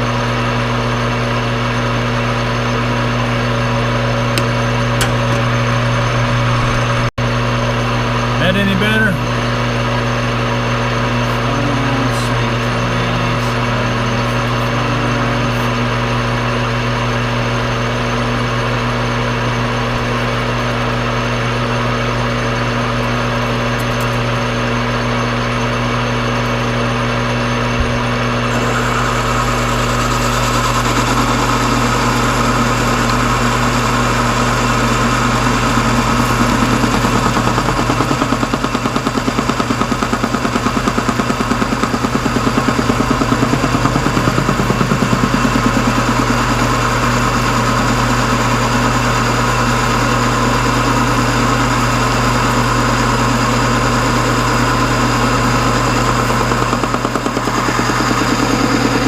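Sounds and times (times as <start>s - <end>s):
lathe machine hum: 0.0s - 59.0s
boring tool cutting steel: 28.5s - 48.0s.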